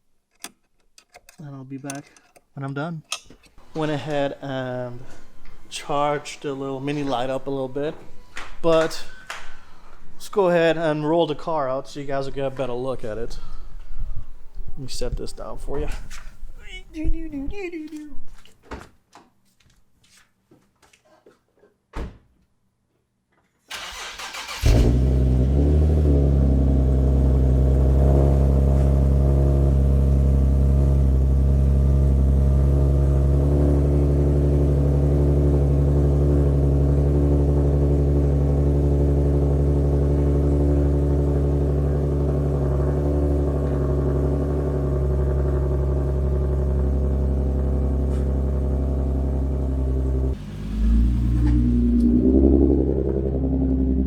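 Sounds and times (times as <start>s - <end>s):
car engine idling: 23.7s - 54.0s.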